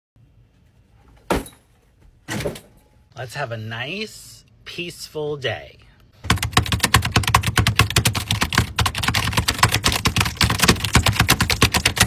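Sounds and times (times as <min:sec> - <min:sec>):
fast keyboard typing: 0:06.2 - 0:12.0.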